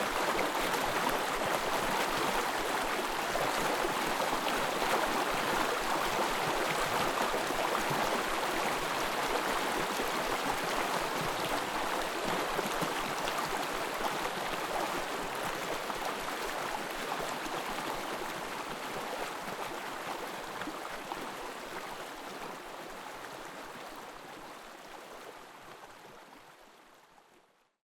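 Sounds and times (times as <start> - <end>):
stream babbling: 0.0 - 26.0.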